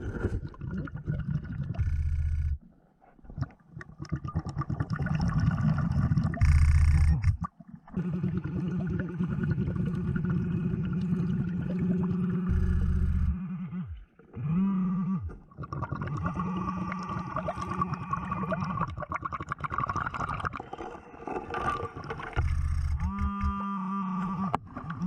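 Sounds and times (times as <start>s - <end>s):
exhaled bubbles bursting: 0.0s - 2.6s, 3.2s - 14.5s, 15.2s - 23.6s
diver breathing underwater: 5.4s - 19.1s
steady low hum: 11.8s - 15.5s, 22.4s - 24.5s.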